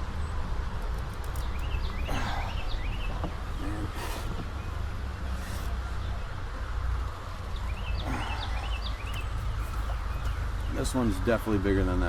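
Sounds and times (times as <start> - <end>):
bird chirping: 1.2 - 6.4, 7.5 - 11.2.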